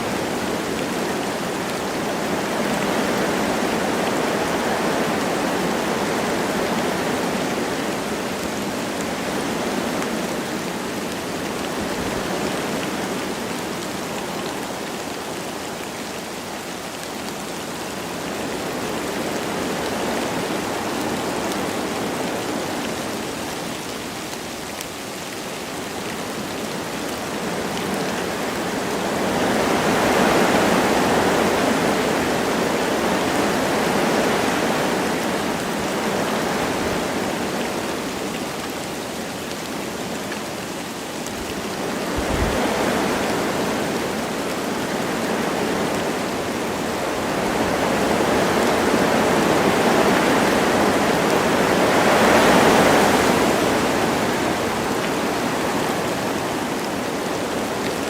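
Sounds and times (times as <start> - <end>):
light rain: 0.0 - 58.0
wind rushing through trees: 0.0 - 58.0.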